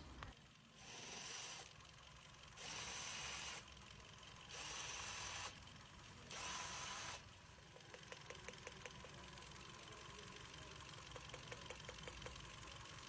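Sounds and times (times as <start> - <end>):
engine idling roughly: 0.0 - 13.0
hiss bursts: 0.7 - 1.8, 2.5 - 3.7, 4.4 - 5.6, 6.3 - 7.3.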